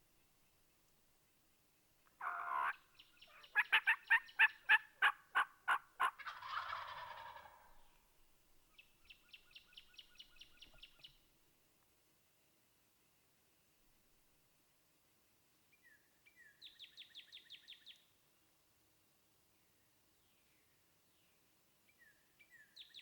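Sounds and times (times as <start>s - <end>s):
turkey yelping: 2.2s - 7.7s.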